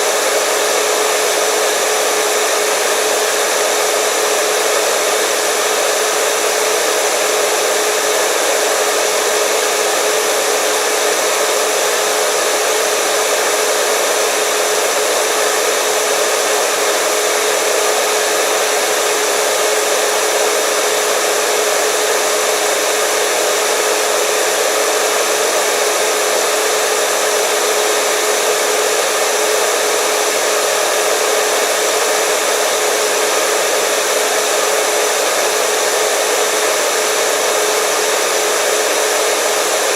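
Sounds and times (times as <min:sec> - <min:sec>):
hair dryer running: 0:00.0 - 0:39.9.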